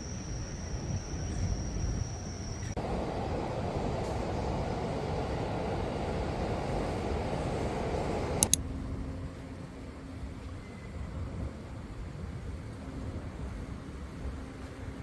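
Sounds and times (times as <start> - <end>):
rushing outdoor background noise: 0.0 - 15.0
sharp clicks: 8.2 - 8.6.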